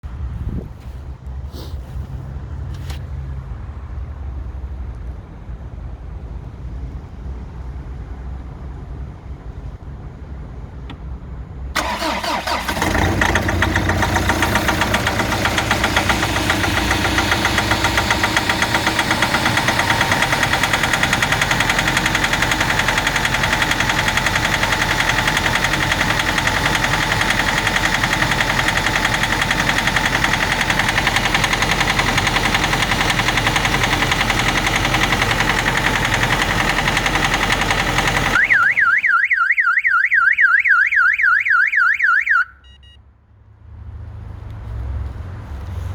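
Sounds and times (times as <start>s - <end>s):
diesel engine starting and idling: 11.7s - 43.0s
engine knock: 11.8s - 39.1s.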